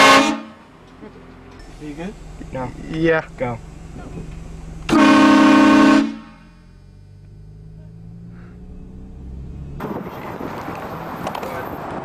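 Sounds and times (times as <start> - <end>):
train horn blast: 0.0 - 0.7, 4.9 - 6.5.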